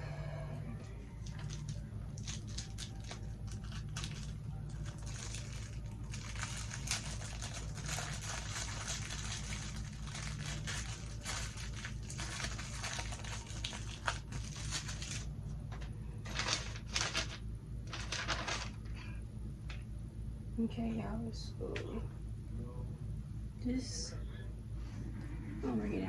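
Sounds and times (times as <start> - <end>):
steady low hum: 0.0 - 26.0
plastic rustling and clicking: 1.2 - 18.9.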